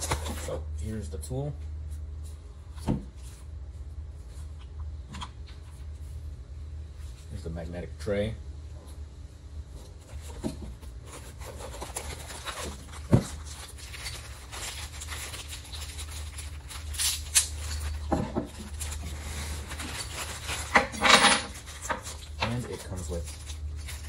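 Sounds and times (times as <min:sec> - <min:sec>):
packaging rustling: 0:10.1 - 0:24.0.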